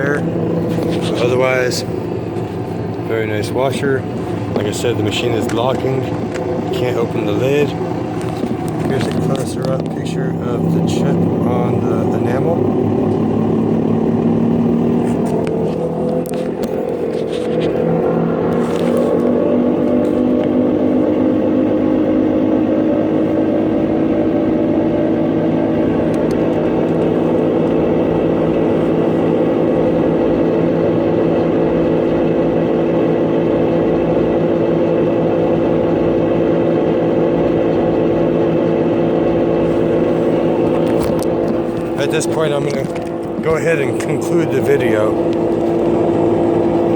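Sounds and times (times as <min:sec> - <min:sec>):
washing machine spinning: 0:00.0 - 0:46.9.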